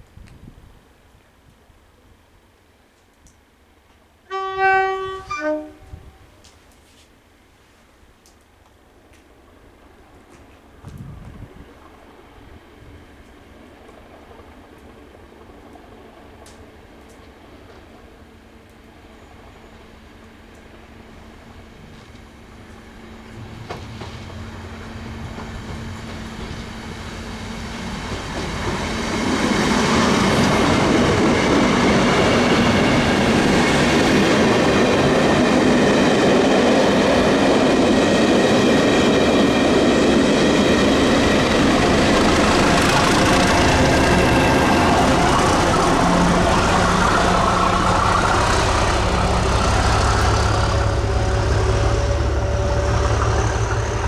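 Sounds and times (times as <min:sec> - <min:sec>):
train wheels clattering on rail: 0:08.4 - 0:54.0
diesel locomotive engine thrashing: 0:21.4 - 0:54.0.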